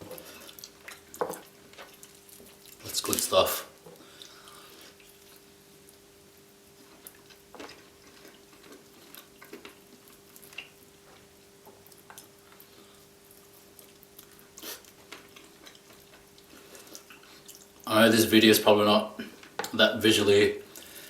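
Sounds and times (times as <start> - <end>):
chewing with wet smacks: 0.0 - 6.1, 6.7 - 17.9.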